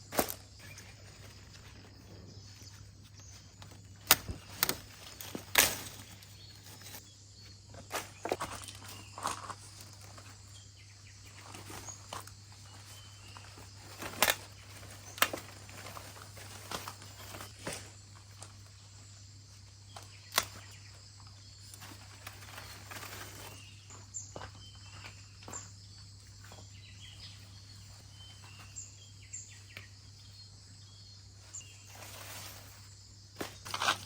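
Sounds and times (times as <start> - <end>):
leaves rustling: 0.0 - 25.7, 31.0 - 34.0
leaf stalks snapping: 0.1 - 0.8, 3.5 - 7.0, 13.3 - 17.9, 20.0 - 20.7.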